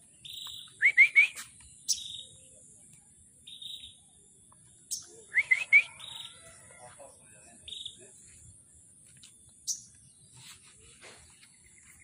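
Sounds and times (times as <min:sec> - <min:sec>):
rising bird chirps: 0:03.4 - 0:04.2.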